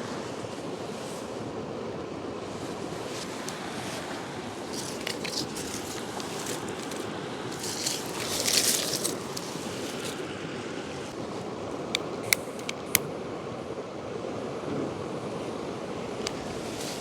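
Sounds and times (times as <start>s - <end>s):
river rushing: 0.0s - 17.0s
sharp clicks: 12.0s - 13.1s.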